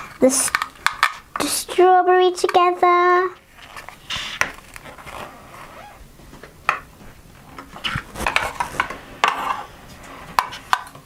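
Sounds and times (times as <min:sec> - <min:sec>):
rustling: 0:03.4 - 0:09.0.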